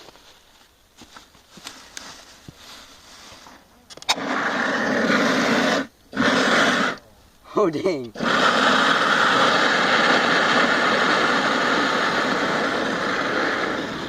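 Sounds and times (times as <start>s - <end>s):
fire extinguisher hissing: 4.1s - 7.0s, 8.2s - 14.0s.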